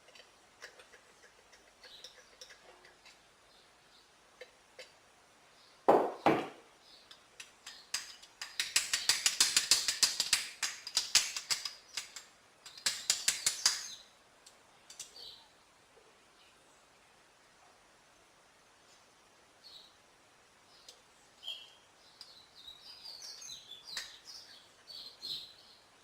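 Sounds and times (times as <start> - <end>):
metal knocks: 5.9 - 6.6
rapid metallic ratcheting clicks: 7.1 - 14.0.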